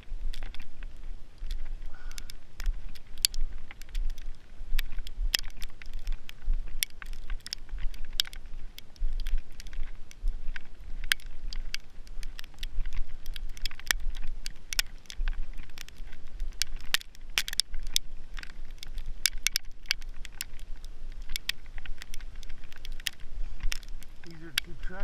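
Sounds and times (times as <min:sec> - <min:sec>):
sleet pellets ticking: 0:00.0 - 0:25.0.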